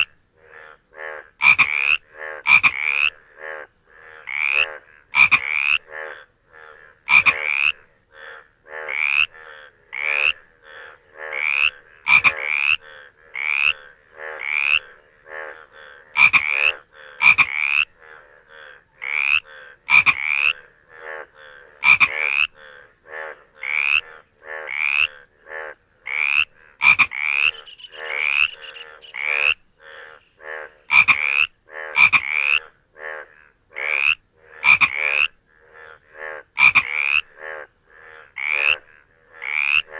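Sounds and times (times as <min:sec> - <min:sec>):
frogs croaking: 0:00.0 - 0:39.9.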